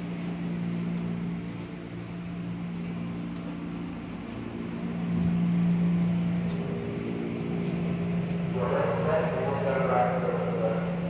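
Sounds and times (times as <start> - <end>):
electric train humming: 0.0 - 11.0.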